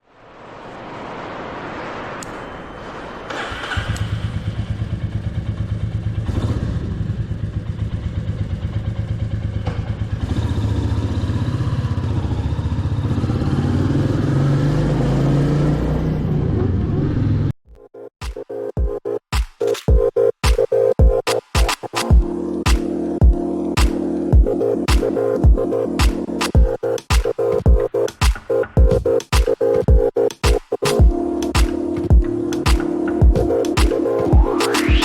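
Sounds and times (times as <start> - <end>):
motorcycle engine running: 4.4 - 13.3.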